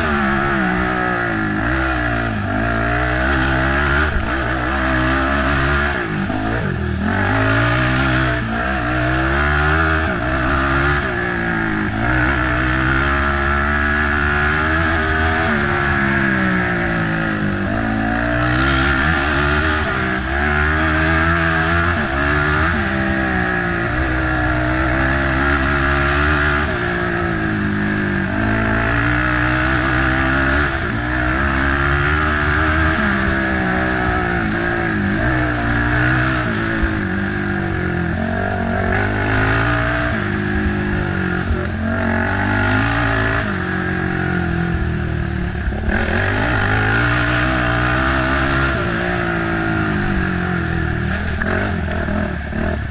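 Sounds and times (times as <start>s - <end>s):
quad engine revving: 0.0s - 52.9s.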